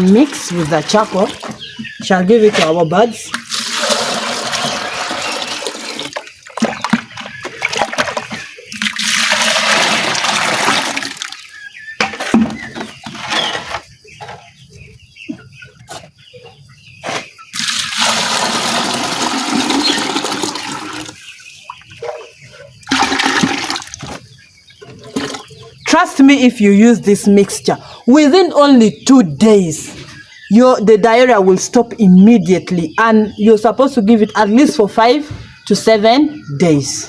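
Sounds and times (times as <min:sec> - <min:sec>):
water pouring and splashing: 0:00.0 - 0:01.6, 0:03.3 - 0:11.5, 0:17.5 - 0:21.3, 0:22.9 - 0:24.2.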